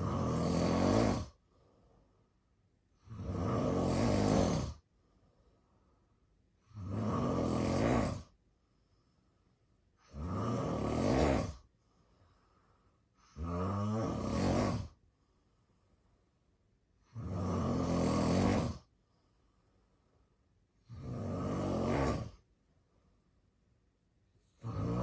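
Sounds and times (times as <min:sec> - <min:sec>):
man snoring: 0:00.0 - 0:01.4, 0:03.0 - 0:04.8, 0:06.6 - 0:08.4, 0:10.0 - 0:11.7, 0:13.2 - 0:15.0, 0:17.0 - 0:18.9, 0:20.8 - 0:22.5, 0:24.4 - 0:25.0.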